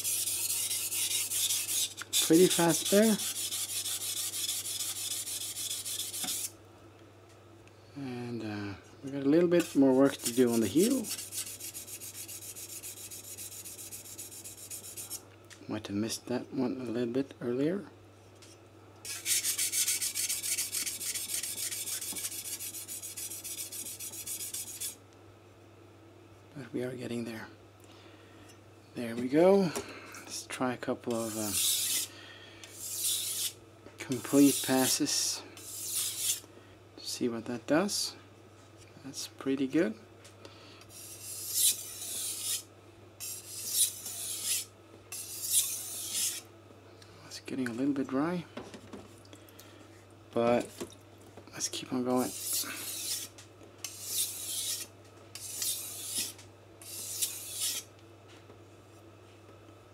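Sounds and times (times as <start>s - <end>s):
knife scraping on whetstone: 0.0s - 6.5s, 9.6s - 15.2s, 19.1s - 25.0s, 31.1s - 32.1s, 32.7s - 35.0s, 35.6s - 36.4s, 40.9s - 46.4s, 52.2s - 57.9s.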